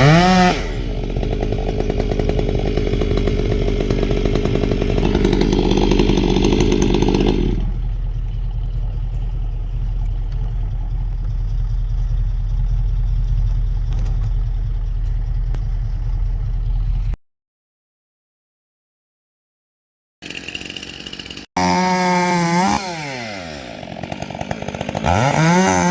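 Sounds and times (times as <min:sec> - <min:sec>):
chainsaw at full throttle: 0:00.0 - 0:08.8, 0:20.2 - 0:25.9
low engine rumble: 0:00.7 - 0:17.2.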